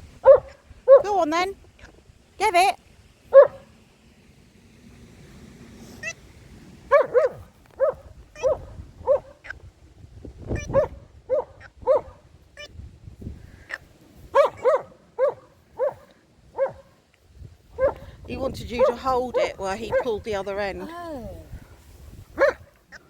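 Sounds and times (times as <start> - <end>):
dog barking: 0.2 - 1.2, 3.3 - 3.7, 6.9 - 9.5, 10.6 - 12.2, 14.3 - 17.0, 17.8 - 18.1, 18.8 - 19.1, 19.9 - 20.1, 22.4 - 22.8.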